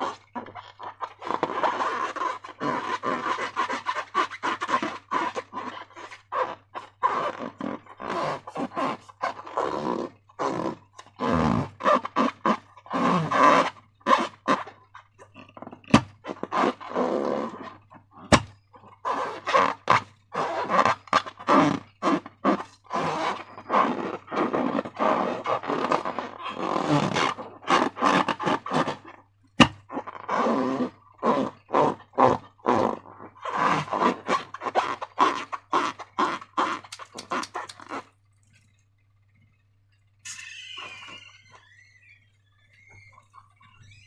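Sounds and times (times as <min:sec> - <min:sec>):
slime squelching: 0:33.1 - 0:38.9.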